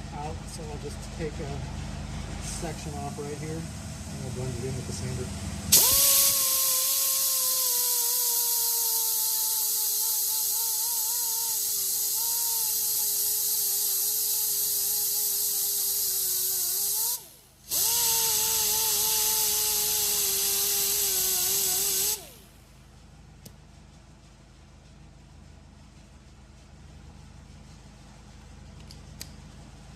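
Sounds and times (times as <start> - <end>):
power sander whining on metal: 4.4 - 22.6.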